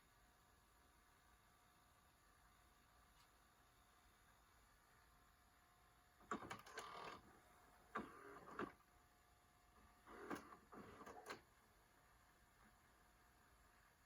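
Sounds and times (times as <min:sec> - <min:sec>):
tape mechanism clicking and whirring: 0:10.0 - 0:11.5.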